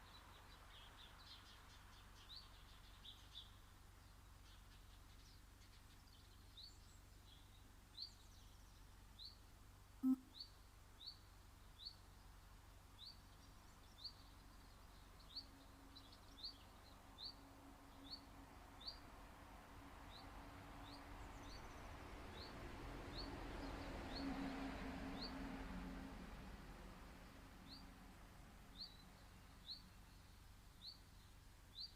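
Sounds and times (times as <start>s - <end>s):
bird chirping: 10.0s - 19.1s, 20.0s - 25.4s, 27.2s - 28.0s, 28.6s - 31.9s.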